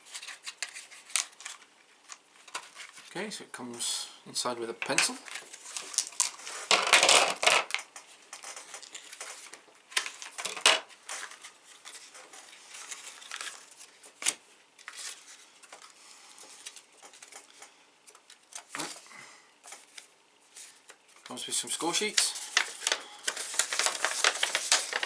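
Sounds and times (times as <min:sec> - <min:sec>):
packaging rustling: 0:04.8 - 0:17.6, 0:22.0 - 0:25.0
game pieces rattling: 0:05.9 - 0:07.8.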